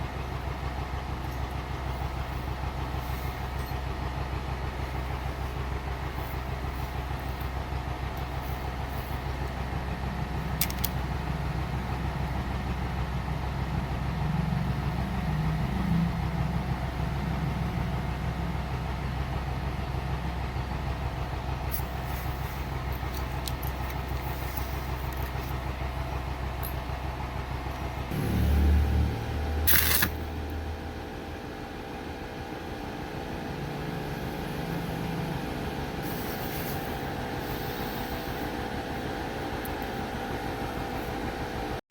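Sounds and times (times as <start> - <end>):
stick welding hum and crackle: 21.6 - 28.6, 29.5 - 30.6.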